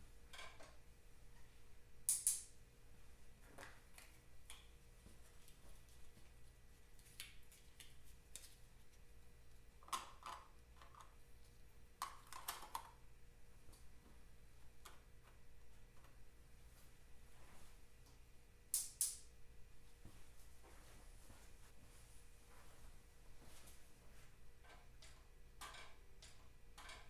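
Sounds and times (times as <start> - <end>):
faint low hum: 0.0 - 27.0
small clicks and taps: 24.6 - 27.0.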